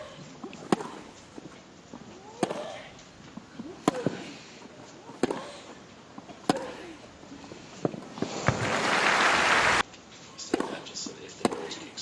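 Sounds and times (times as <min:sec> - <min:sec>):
racket striking tennis ball: 0:00.5 - 0:01.1, 0:02.4 - 0:02.8, 0:03.8 - 0:04.2, 0:05.1 - 0:05.5, 0:06.4 - 0:06.8, 0:10.5 - 0:10.8, 0:11.4 - 0:11.8
crowd applauding: 0:08.4 - 0:09.8.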